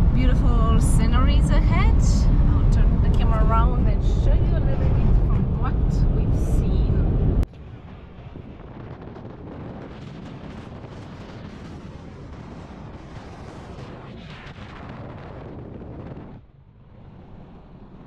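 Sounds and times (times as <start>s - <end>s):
low rumble with hiss: 0.0s - 12.4s.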